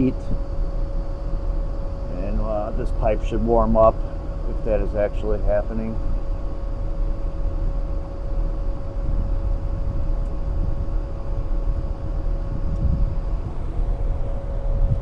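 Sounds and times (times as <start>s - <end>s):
hvac unit droning: 0.0s - 15.0s.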